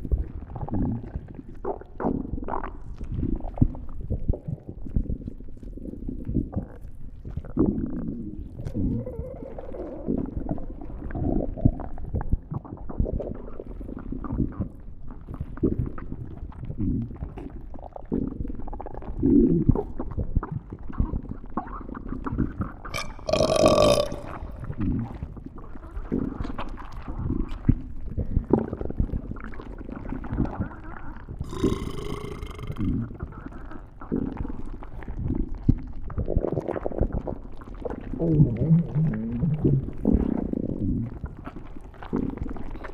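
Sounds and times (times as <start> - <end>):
stomach growling: 0.0 - 42.9
high-pitched stomach squeal: 22.9 - 24.9, 31.4 - 33.1.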